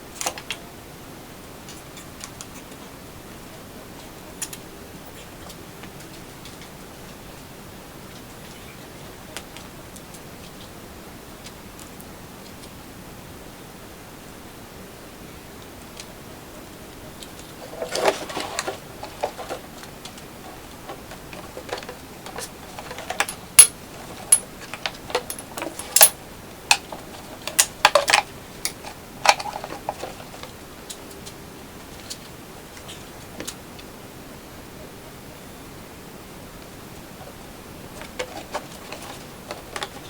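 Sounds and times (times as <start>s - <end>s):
tools clicking and tapping on metal: 17.7s - 30.4s.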